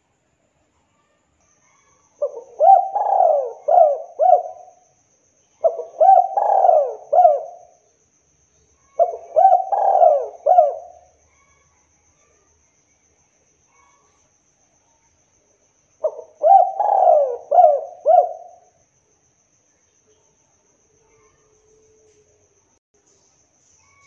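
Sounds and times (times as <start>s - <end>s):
dove cooing: 2.2s - 4.8s, 5.6s - 7.7s, 9.0s - 11.1s, 16.0s - 18.6s.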